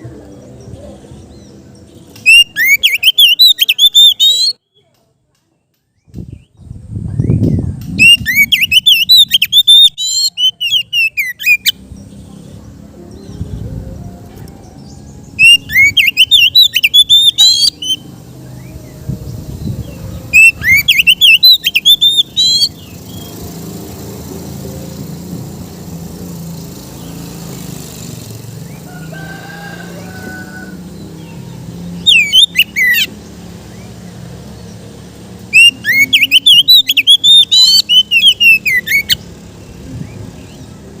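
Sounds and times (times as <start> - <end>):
bird singing whistled phrases: 2.1 - 4.6, 7.1 - 11.8, 15.4 - 18.7, 20.3 - 23.3, 32.0 - 33.2, 35.5 - 39.2.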